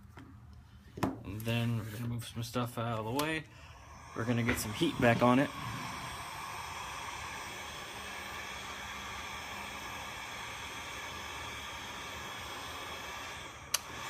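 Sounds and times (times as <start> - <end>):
hot-air tool hissing: 3.6 - 14.0.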